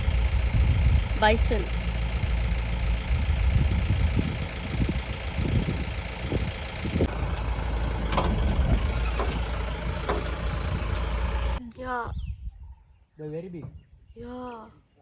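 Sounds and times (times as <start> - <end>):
vehicle engine rumbling: 0.0 - 11.6
vehicle knocks and rattles: 0.0 - 11.6.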